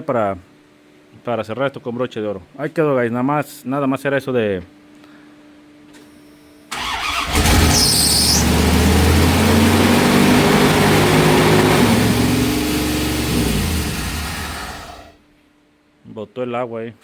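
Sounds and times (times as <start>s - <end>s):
engine cranking and starting: 6.7s - 15.1s
engine fast idle: 6.7s - 15.2s
short high squeal: 7.3s - 8.6s.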